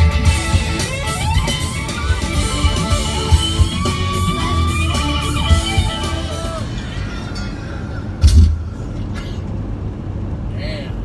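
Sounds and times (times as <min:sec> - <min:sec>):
rock music with guitar and drums: 0:00.0 - 0:07.0.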